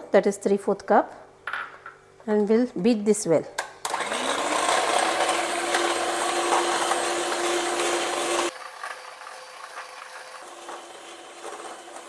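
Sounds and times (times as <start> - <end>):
electric mixer running: 3.8 - 12.0.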